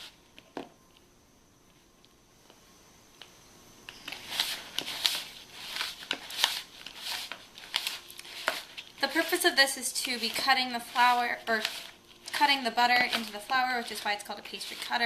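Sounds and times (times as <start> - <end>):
pastry cutter scraping crumbly mix: 4.0 - 15.0.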